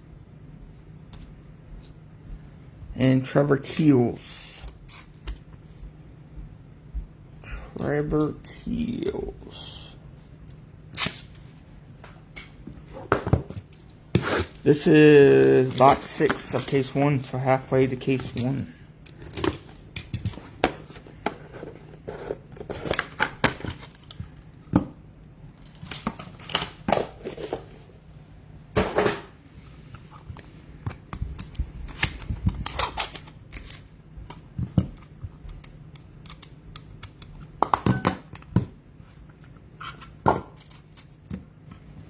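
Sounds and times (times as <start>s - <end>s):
wrappers crinkling and tearing: 14.5s - 17.3s
cards clicking and tapping: 30.3s - 38.8s.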